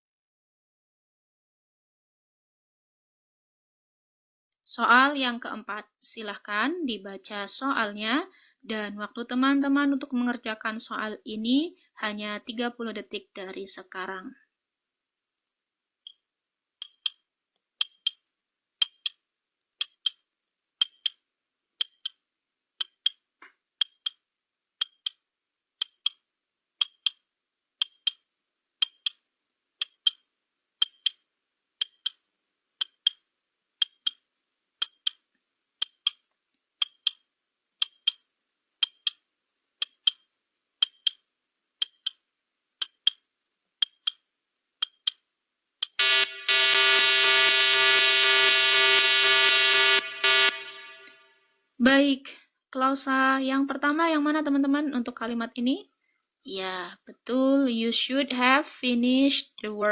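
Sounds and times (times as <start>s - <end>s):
clock ticking: 16.8s - 17.2s, 17.8s - 18.2s, 18.8s - 19.2s, 19.8s - 20.2s, 20.8s - 21.2s, 21.8s - 22.2s, 22.8s - 23.2s, 23.8s - 24.2s, 24.8s - 25.2s, 25.8s - 26.2s, 26.8s - 27.2s, 27.8s - 28.2s, 28.8s - 29.2s, 29.8s - 30.2s, 30.8s - 31.2s, 31.8s - 32.2s, 32.8s - 33.2s, 33.8s - 34.2s, 34.8s - 35.2s, 35.8s - 36.2s, 36.8s - 39.2s, 39.8s - 41.2s, 41.8s - 42.2s, 42.8s - 43.2s, 43.8s - 44.2s, 44.8s - 45.2s, 45.8s - 46.0s.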